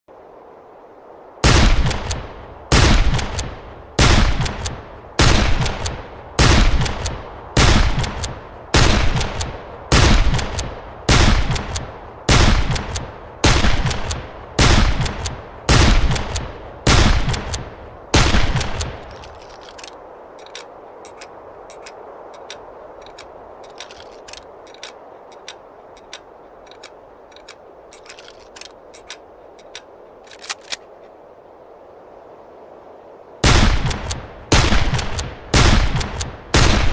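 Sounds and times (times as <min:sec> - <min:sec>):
rifle shots echoing: 0:01.4 - 0:03.4, 0:04.0 - 0:19.4, 0:33.4 - 0:36.9
small metallic clicks: 0:18.6 - 0:31.0.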